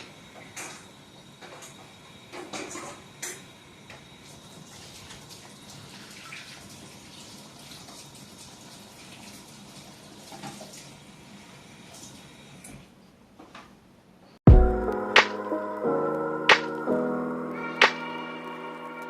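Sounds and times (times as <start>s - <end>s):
water running from tap: 4.2s - 12.7s.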